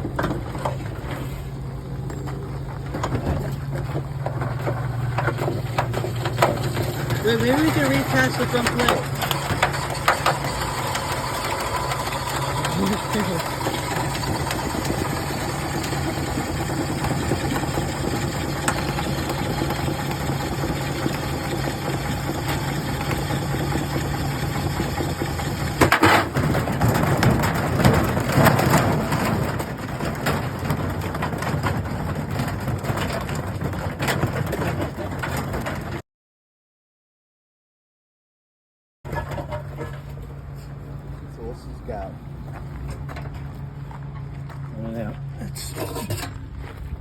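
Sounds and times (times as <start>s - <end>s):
washing machine motor humming: 1.8s - 26.0s
clattering and banging: 2.1s - 36.0s, 39.1s - 40.4s.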